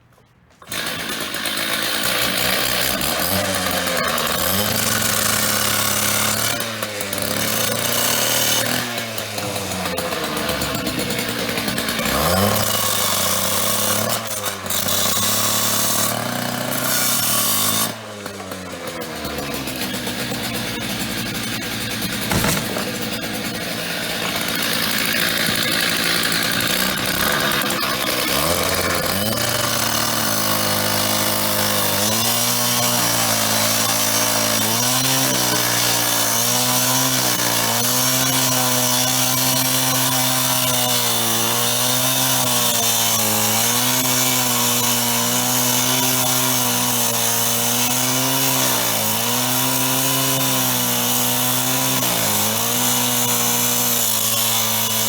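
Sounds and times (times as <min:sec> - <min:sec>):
power tool cutting metal: 0:00.6 - 0:55.0.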